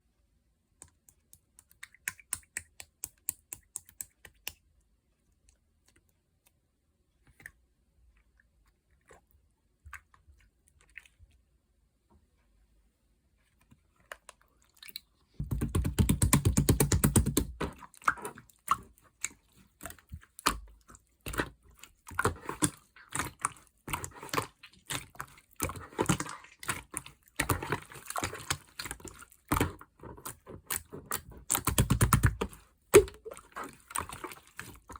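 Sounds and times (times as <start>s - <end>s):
slime squishing: 13.5s - 34.9s.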